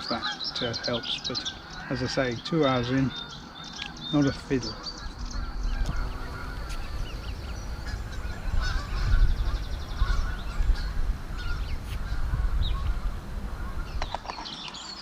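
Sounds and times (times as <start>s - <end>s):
wild birds calling: 0.0s - 15.0s
wind buffeting microphone: 0.0s - 15.0s.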